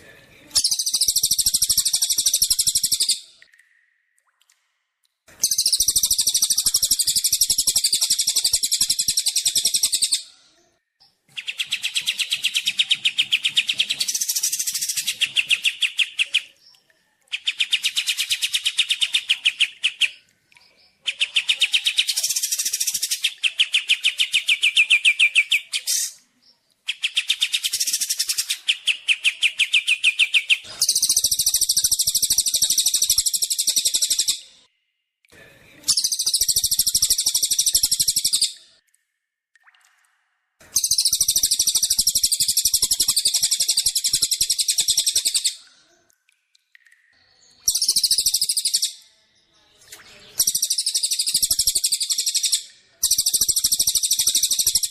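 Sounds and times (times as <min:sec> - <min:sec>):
songbirds singing: 0:11.0 - 0:34.7.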